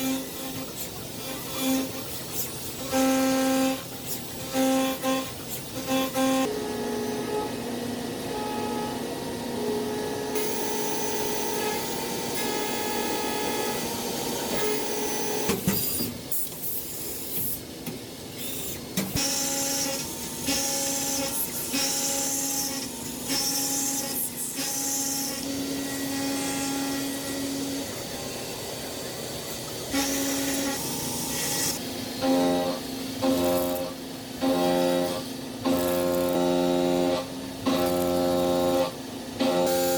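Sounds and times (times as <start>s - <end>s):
machine tool motor whine: 18.4s - 39.9s.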